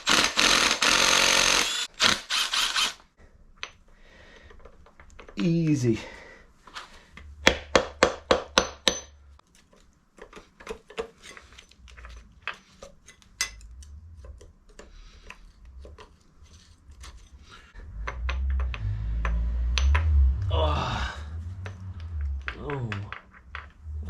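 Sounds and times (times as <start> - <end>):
low rumble of handling: 13.6 - 24.0.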